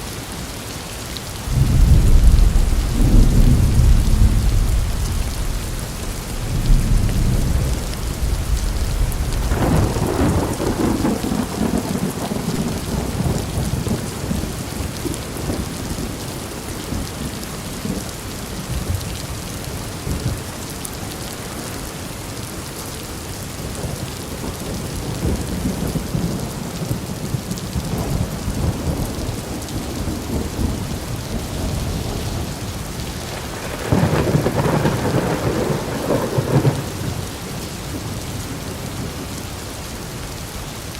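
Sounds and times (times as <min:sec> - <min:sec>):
steady rain hissing: 0:00.0 - 0:40.9
rolling thunder: 0:01.4 - 0:15.8, 0:23.7 - 0:39.3.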